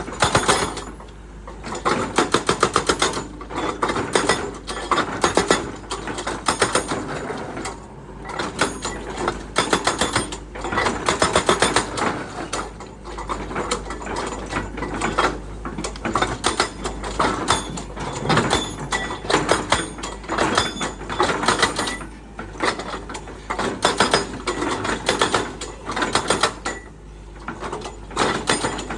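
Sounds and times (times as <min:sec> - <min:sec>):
excavator clattering and rattling: 0:00.0 - 0:28.9
low mechanical hum: 0:00.0 - 0:28.9.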